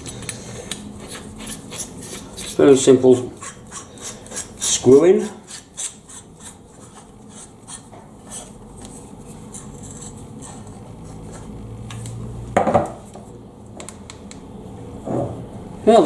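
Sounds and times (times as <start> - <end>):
threaded parts scraping and ticking: 0.0 - 8.5.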